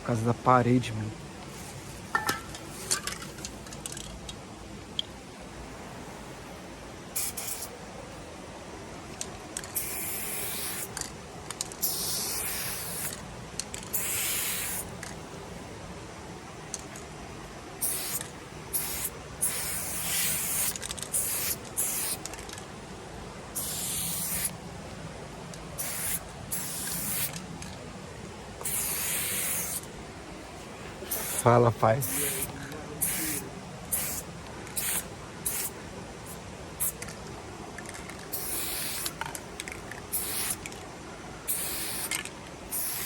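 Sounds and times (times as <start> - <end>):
spray paint can hissing: 7.2 - 7.7, 9.6 - 11.1, 11.7 - 13.2, 13.8 - 14.9, 17.8 - 22.4, 23.6 - 24.5, 25.8 - 27.4, 28.6 - 29.9, 31.1 - 31.4, 32.0 - 35.7, 36.3 - 37.1, 38.3 - 39.2, 40.1 - 40.7, 41.5 - 43.0.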